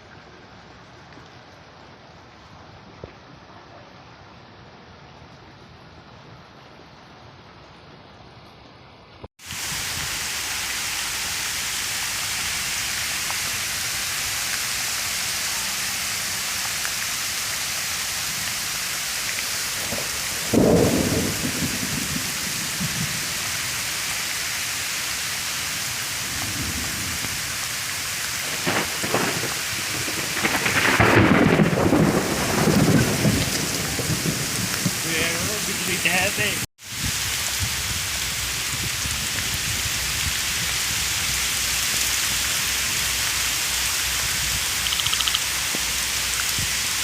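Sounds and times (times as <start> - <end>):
heavy rain hissing: 9.4 - 47.0
deep rumbling thunder: 19.8 - 23.4, 26.2 - 27.5, 28.4 - 35.6.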